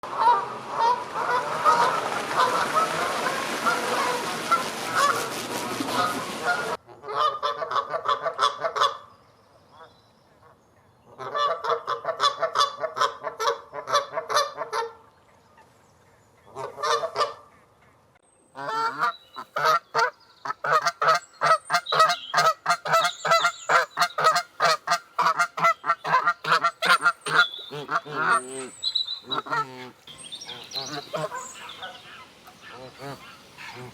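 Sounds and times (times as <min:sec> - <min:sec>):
geese honking: 0:00.0 - 0:09.0, 0:18.6 - 0:33.9
steady hiss: 0:27.0 - 0:33.9.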